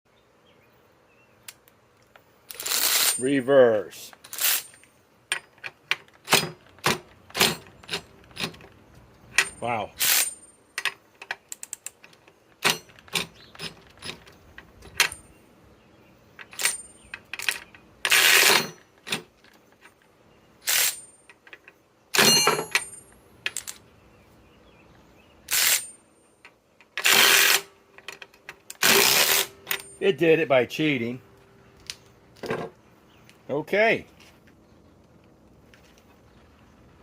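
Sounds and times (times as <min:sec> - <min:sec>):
handling clicks and knocks: 0:04.1 - 0:09.8, 0:10.4 - 0:15.4, 0:16.3 - 0:20.2, 0:21.2 - 0:23.9, 0:27.9 - 0:30.2
impact wrench hammering: 0:22.2 - 0:23.0.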